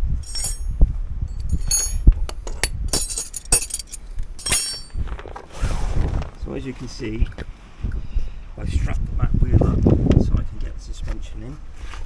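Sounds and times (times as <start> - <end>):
metal tools clinking: 0.0 - 5.2
wind buffeting microphone: 4.9 - 11.0.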